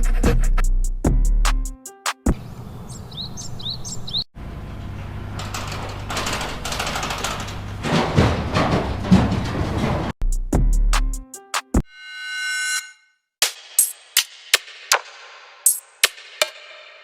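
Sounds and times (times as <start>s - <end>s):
outdoor rumble with low hum: 2.3s - 10.2s
bird chirps: 2.4s - 4.3s.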